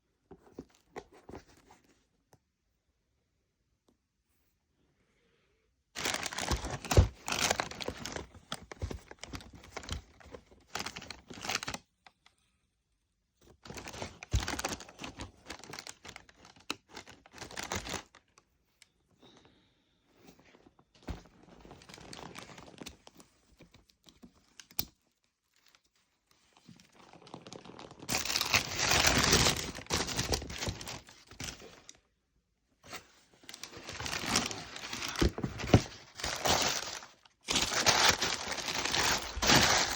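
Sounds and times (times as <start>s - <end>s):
packaging paper crinkling: 6.0s - 11.8s, 13.6s - 18.3s, 21.0s - 23.2s, 26.5s - 31.9s, 32.9s - 39.9s.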